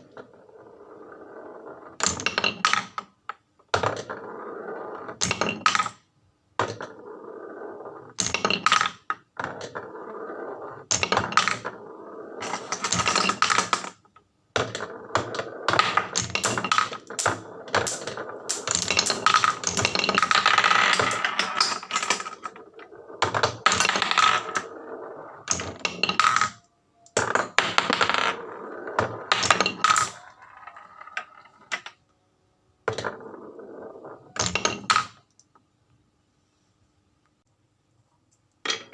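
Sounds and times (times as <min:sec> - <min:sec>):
marbles rolling on wooden tracks: 0:00.0 - 0:03.1, 0:03.7 - 0:06.0, 0:06.6 - 0:32.0, 0:32.8 - 0:35.4.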